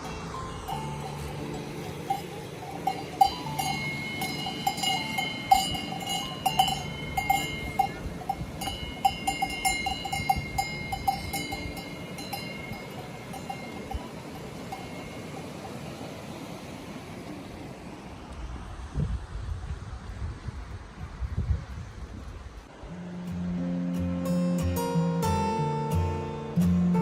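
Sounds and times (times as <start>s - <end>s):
livestock bells clanking: 0.0s - 16.2s.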